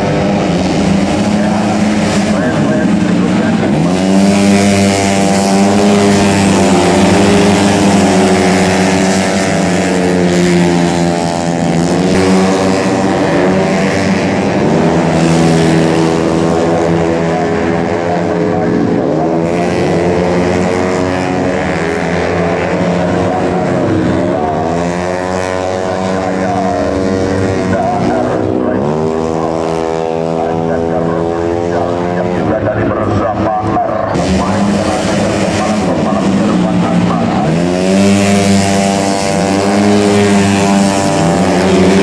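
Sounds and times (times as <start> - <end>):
scooter engines racing past: 0.0 - 33.3, 34.1 - 42.0.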